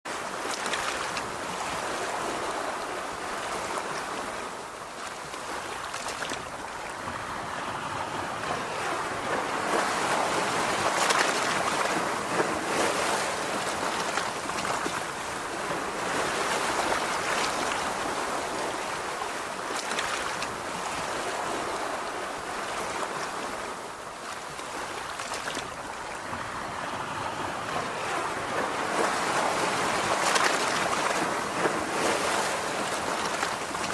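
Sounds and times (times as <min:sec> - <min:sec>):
ocean waves breaking on shore: 0:00.0 - 0:33.9.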